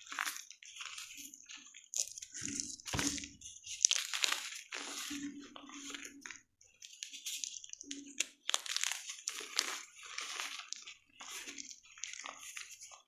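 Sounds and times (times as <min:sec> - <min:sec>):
chalk crunching and crackling: 0:06.9 - 0:13.0.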